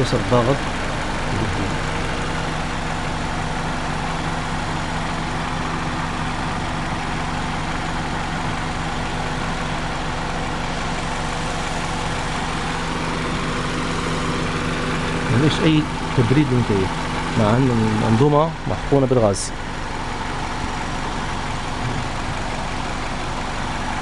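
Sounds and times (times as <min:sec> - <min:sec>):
air conditioning compressor rushing: 0:00.0 - 0:24.0
car engine idling: 0:00.0 - 0:24.0.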